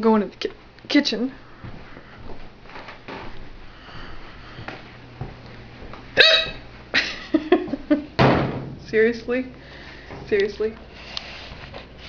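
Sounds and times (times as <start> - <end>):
woman hiccuping: 6.2 - 6.6.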